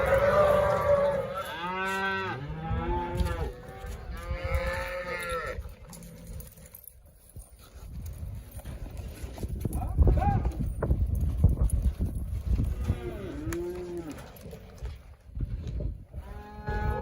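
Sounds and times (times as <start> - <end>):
cattle mooing: 0.0 - 6.0, 12.7 - 14.4.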